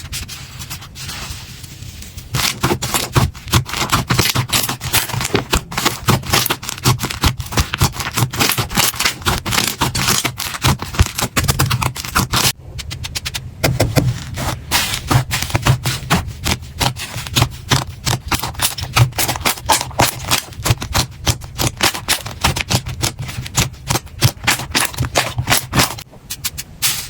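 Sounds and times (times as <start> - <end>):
soft slime scraping: 0.0 - 26.0
slime crackling and popping: 16.4 - 26.0.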